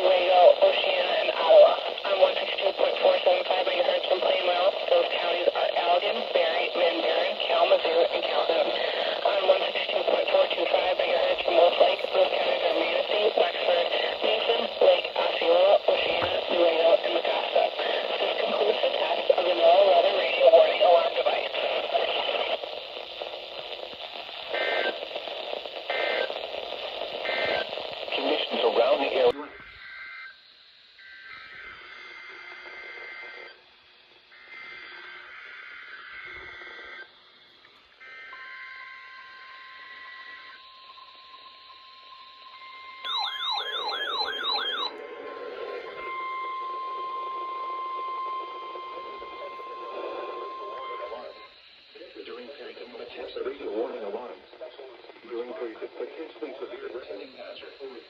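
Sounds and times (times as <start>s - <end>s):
spoken message over radio: 0.0s - 29.6s, 48.9s - 58.0s
radio static: 0.0s - 29.7s, 43.1s - 46.2s, 46.8s - 58.0s
two-tone data bursts: 24.4s - 31.8s, 38.0s - 45.0s
faint steady high tone: 38.3s - 51.6s
steady hiss: 49.0s - 58.0s.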